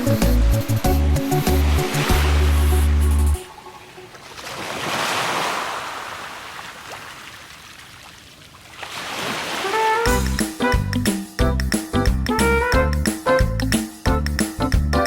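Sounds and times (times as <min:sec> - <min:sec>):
ocean surf breaking waves: 0:01.0 - 0:08.1, 0:08.7 - 0:10.1.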